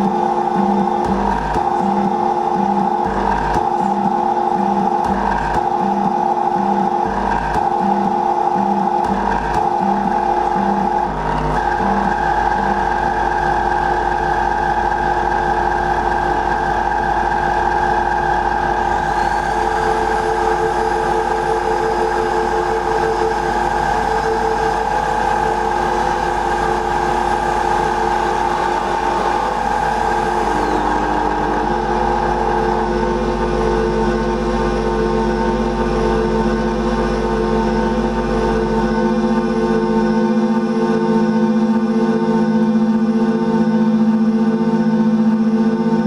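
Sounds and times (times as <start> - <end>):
high-pitched whine: 0.0 - 46.0
vacuum cleaner motor droning: 9.0 - 39.0
held notes at changing pitches: 18.2 - 38.3.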